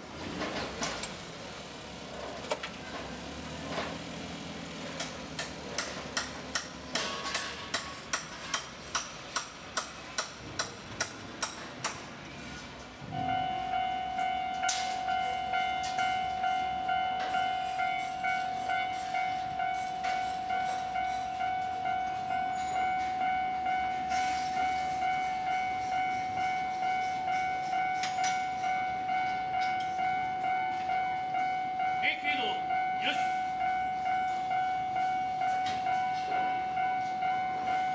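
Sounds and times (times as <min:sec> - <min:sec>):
level crossing warning bell: 0:12.4 - 0:37.9.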